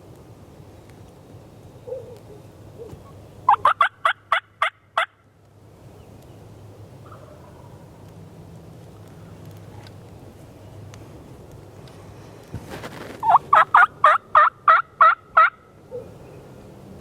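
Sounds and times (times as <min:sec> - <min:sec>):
turkey calling sharp notes: 0:03.5 - 0:05.2, 0:13.2 - 0:15.6.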